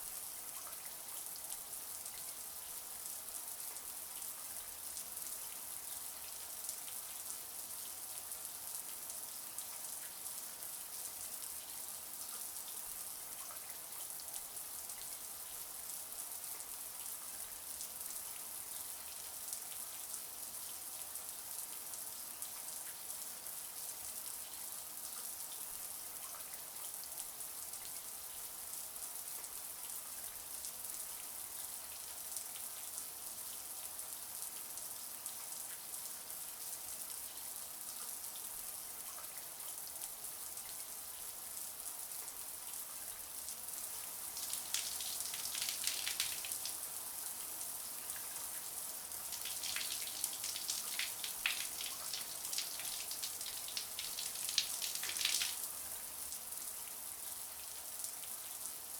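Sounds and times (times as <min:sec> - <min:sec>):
shower water running: 0:43.9 - 0:46.8, 0:48.4 - 0:55.8
droplets pattering: 0:44.3 - 0:46.7, 0:49.3 - 0:55.6.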